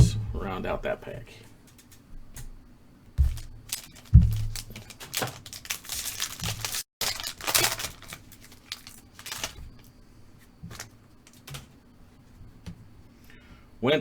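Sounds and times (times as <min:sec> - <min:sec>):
wrapper crinkling and tearing: 0:03.2 - 0:09.9.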